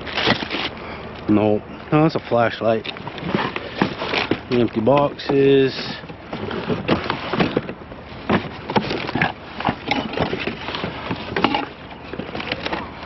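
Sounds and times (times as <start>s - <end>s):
knocks and clunks of items: 2.8s - 13.0s
rustling: 2.8s - 13.0s.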